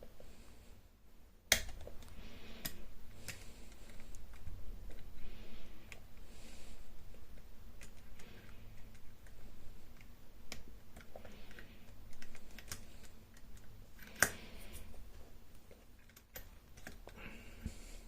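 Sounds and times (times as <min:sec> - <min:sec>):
lock picks clicking and scraping: 0:07.1 - 0:15.0, 0:15.6 - 0:17.2.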